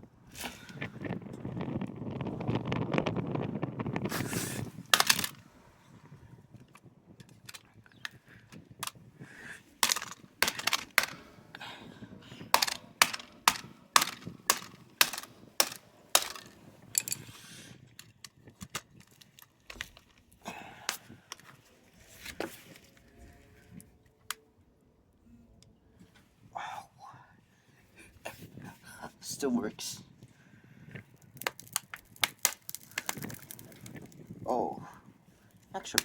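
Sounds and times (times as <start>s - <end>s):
screwdriver striking smartphone: 12.6s - 16.6s.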